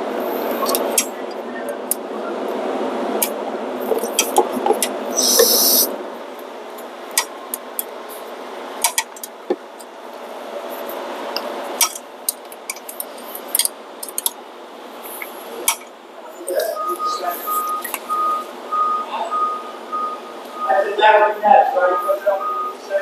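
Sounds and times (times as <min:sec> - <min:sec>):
steady background noise: 0:00.0 - 0:23.0
loud hissing rustle: 0:05.0 - 0:06.0.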